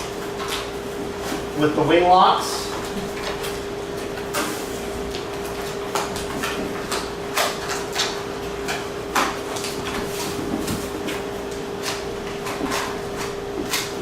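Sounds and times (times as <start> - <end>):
steady hum: 0.0 - 14.0
panels scraping and knocking: 9.8 - 14.0.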